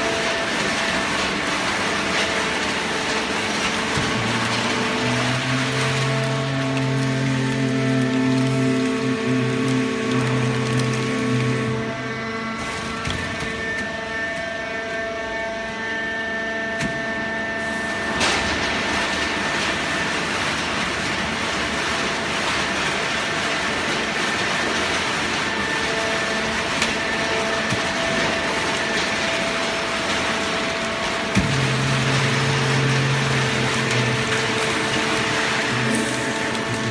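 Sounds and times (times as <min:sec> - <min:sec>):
machine hum with held tones: 0:00.0 - 0:36.9
rushing mechanical noise: 0:17.8 - 0:36.9.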